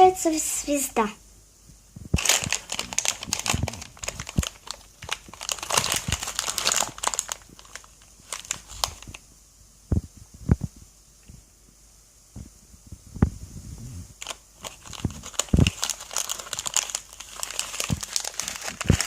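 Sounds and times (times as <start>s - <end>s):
crinkling of craft pieces handled: 2.1s - 9.2s, 14.2s - 19.0s.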